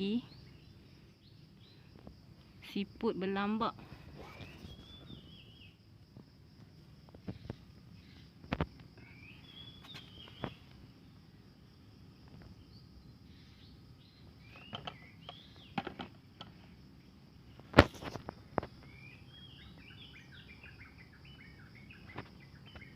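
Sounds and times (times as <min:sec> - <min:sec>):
birds chirping: 0:00.0 - 0:02.0, 0:03.4 - 0:05.8, 0:07.2 - 0:11.2, 0:12.6 - 0:15.9, 0:18.8 - 0:22.9
high insect drone: 0:00.0 - 0:22.9.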